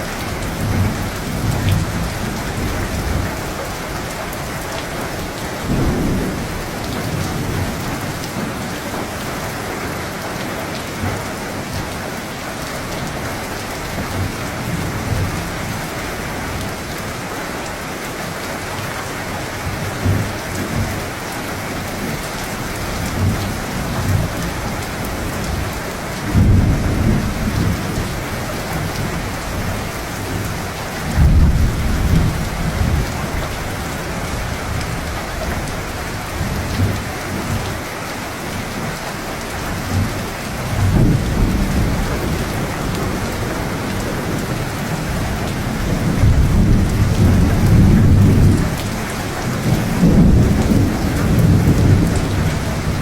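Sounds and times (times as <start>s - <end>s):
steady rain falling: 0.0s - 53.0s
low rolling thunder: 0.3s - 9.2s, 22.0s - 37.6s, 39.7s - 53.0s.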